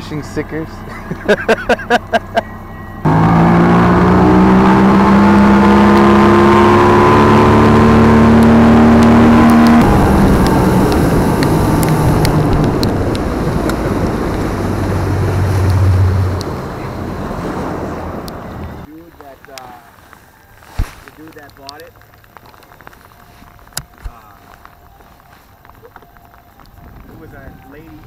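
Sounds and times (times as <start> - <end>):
outboard motor accelerating: 0.0 - 18.9.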